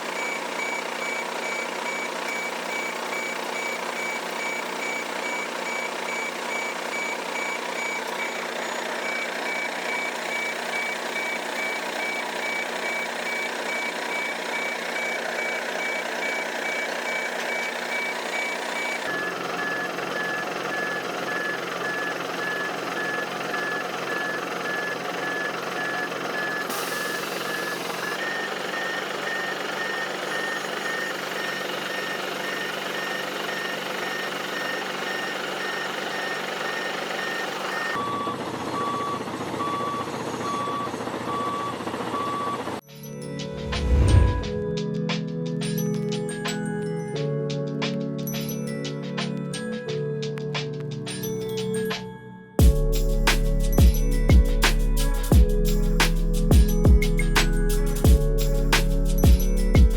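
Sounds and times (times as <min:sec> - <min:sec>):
steady machine noise: 0:00.0 - 0:39.6
high electronic beep: 0:00.2 - 0:42.6, 0:43.5 - 0:44.7.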